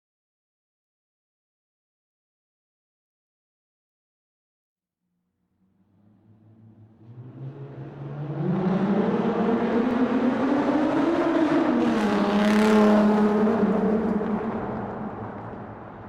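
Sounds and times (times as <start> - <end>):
car engine in a tunnel: 5.3 - 16.0.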